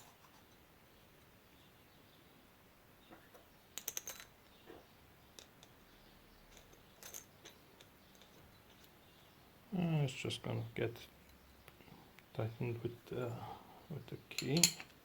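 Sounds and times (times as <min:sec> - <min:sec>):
small metal parts clicking: 0:03.8 - 0:04.4, 0:06.5 - 0:09.0.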